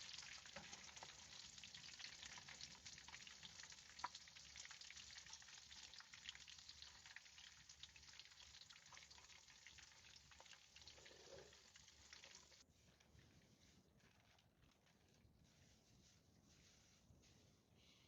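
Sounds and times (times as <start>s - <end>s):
food sizzling in a pan: 0.0s - 12.6s.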